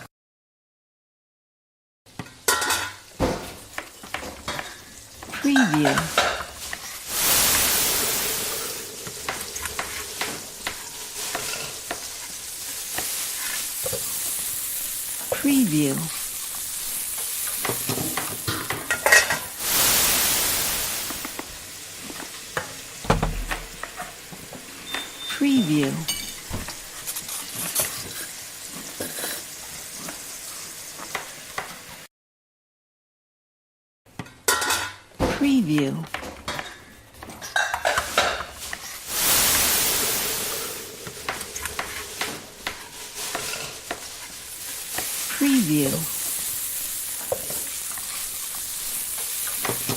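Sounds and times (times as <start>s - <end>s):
utensils and pans clinking: 2.2s - 15.4s, 16.1s - 30.2s, 34.5s - 35.4s, 36.0s - 49.9s
loud hiss: 5.7s - 24.8s, 39.0s - 49.9s.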